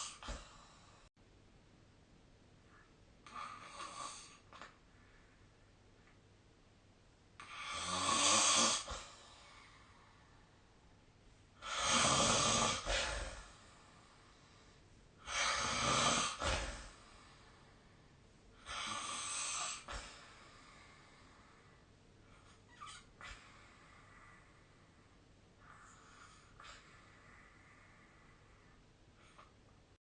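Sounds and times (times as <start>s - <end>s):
person snoring: 7.4s - 9.2s, 11.6s - 13.5s, 15.2s - 17.0s, 18.6s - 20.1s.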